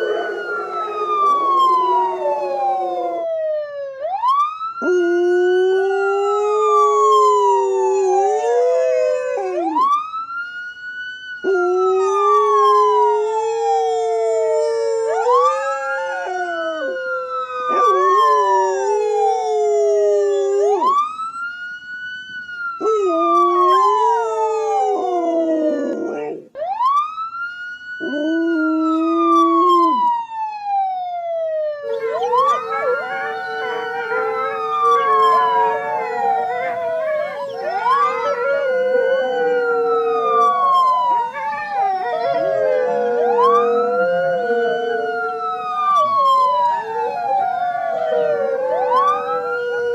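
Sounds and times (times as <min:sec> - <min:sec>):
dog howling: 0:00.0 - 0:03.3, 0:13.2 - 0:20.9, 0:22.8 - 0:26.5, 0:31.9 - 0:49.9
emergency vehicle siren wailing: 0:00.0 - 0:49.9.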